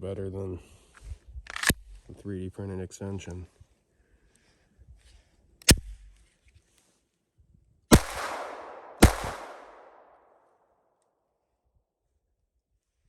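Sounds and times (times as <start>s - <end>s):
pistol shots with echo: 7.9s - 10.2s.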